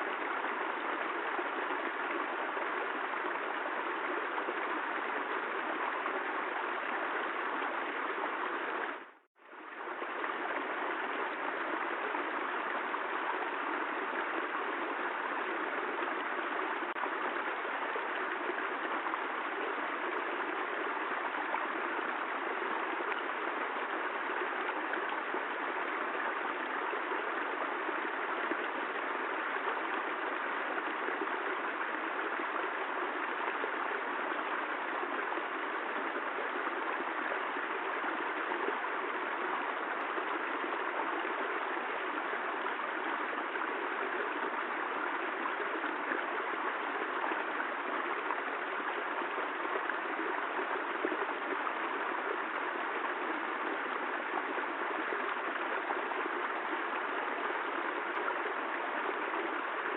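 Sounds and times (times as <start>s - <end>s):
rushing water: 0.0s - 59.9s.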